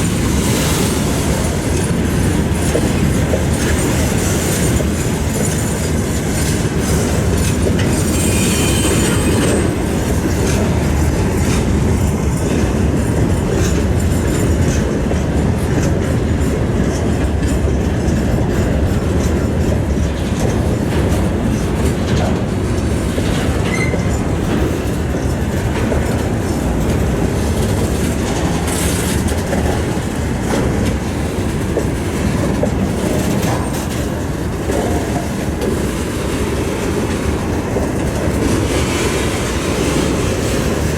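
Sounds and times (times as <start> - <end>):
freight train rumbling: 0.0 - 40.9
wheels clattering over rail joints: 0.0 - 40.9
wheel squeals: 7.8 - 9.8, 23.6 - 24.2.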